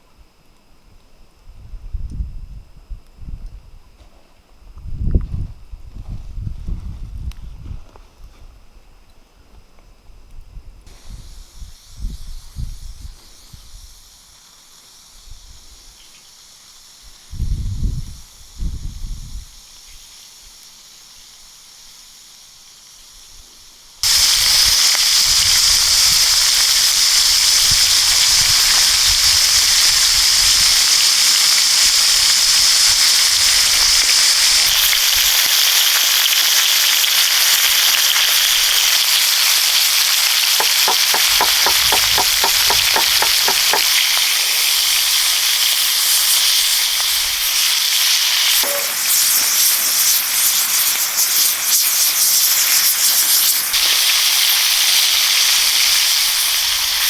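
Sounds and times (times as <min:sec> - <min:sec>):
meat sizzling in hot fat: 0:10.9 - 0:57.0
low thumps: 0:40.6 - 0:44.3.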